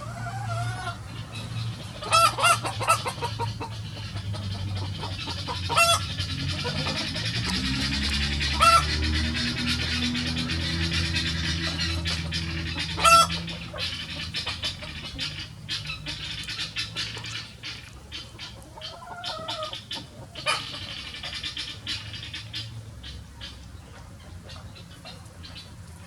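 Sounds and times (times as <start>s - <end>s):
chicken squawk: 0.0s - 22.4s
hen drawn-out call: 4.8s - 23.6s.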